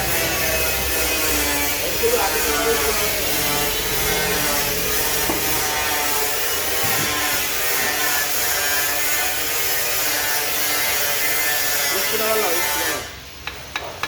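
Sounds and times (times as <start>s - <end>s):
tools working on motorcycle engine: 0.0s - 14.0s.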